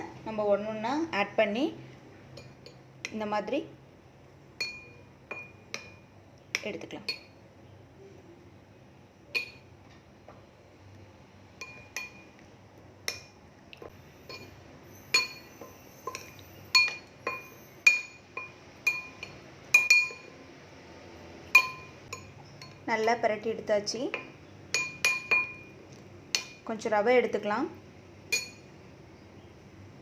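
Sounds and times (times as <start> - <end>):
utensil clinking against a bowl: 2.3 - 3.2, 4.6 - 7.4, 9.3 - 9.7, 11.6 - 12.4, 14.2 - 20.4, 21.5 - 23.5, 24.1 - 25.7, 26.3 - 26.7, 28.3 - 28.7.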